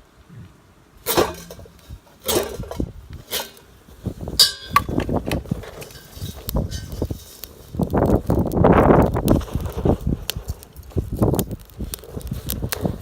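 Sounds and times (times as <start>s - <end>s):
clattering and handling noise: 1.0s - 8.4s.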